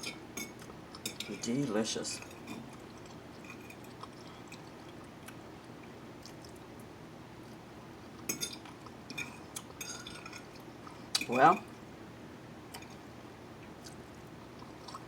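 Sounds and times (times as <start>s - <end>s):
quiet chewing: 2.2s - 11.3s, 12.7s - 15.0s.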